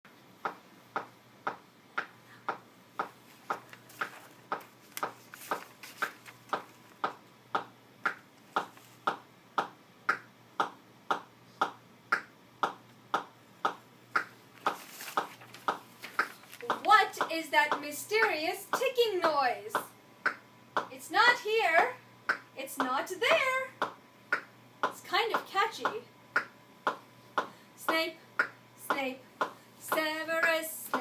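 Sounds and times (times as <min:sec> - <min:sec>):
sharp ticking clicks: 0:00.4 - 0:05.6, 0:06.5 - 0:14.3, 0:23.8 - 0:31.0.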